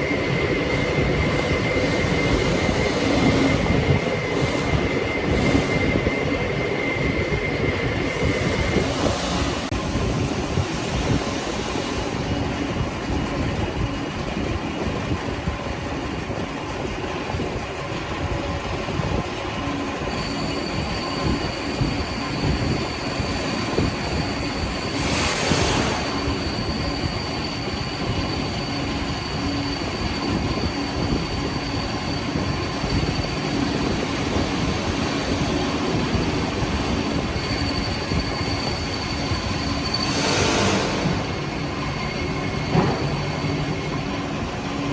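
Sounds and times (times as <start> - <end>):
rushes of noise: 0.0 - 14.0
lathe cutting metal: 0.0 - 15.0, 19.6 - 44.9
high steady whine: 0.0 - 44.9.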